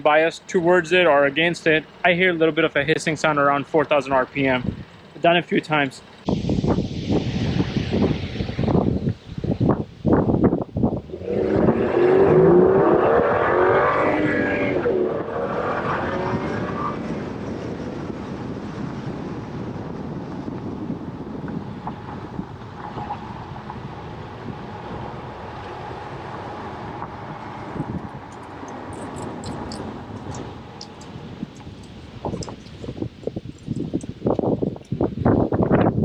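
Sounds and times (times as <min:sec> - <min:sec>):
car engine accelerating past: 0:11.1 - 0:17.6.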